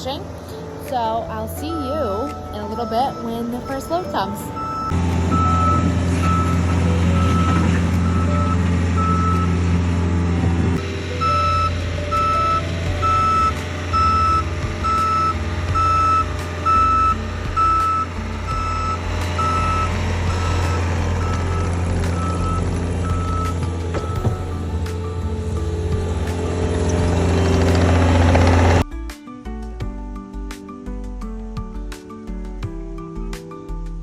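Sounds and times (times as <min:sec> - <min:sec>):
loader engine running: 0:00.0 - 0:28.8
backup alarm beeping: 0:01.7 - 0:09.6, 0:11.2 - 0:25.3.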